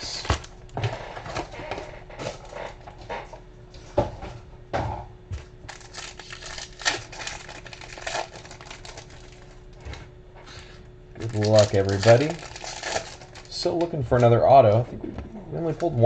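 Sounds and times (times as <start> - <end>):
pack wrappers crinkling and tearing: 5.6 - 9.8, 11.2 - 14.3.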